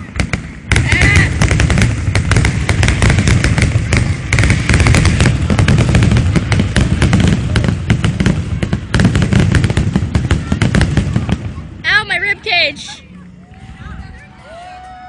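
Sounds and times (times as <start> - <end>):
firework shell booms: 0.0 - 11.6
crackling firework bursts: 0.0 - 13.0.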